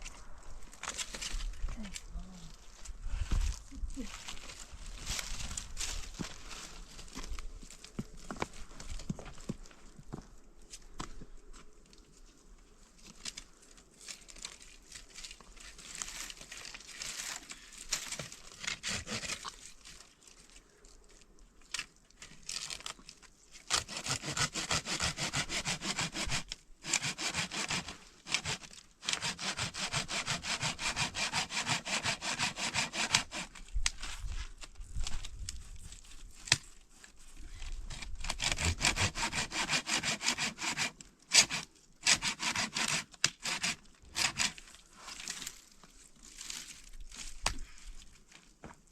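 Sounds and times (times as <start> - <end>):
wood being sawn by hand: 18.6 - 19.5, 23.7 - 33.6, 37.9 - 44.6.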